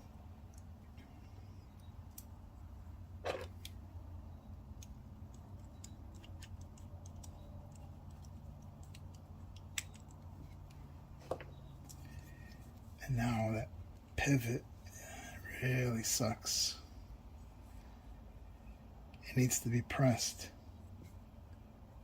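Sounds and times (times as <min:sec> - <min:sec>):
steady low hum: 0:00.0 - 0:22.0
small metal parts clicking: 0:04.8 - 0:10.8.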